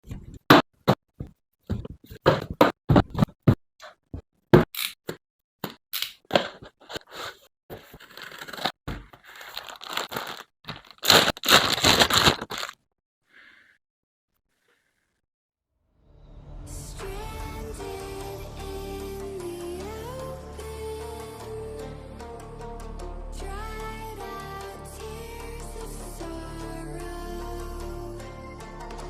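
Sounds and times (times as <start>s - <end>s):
packaging crinkling: 7.8s - 12.8s
packaging ripping and tearing: 7.8s - 12.8s.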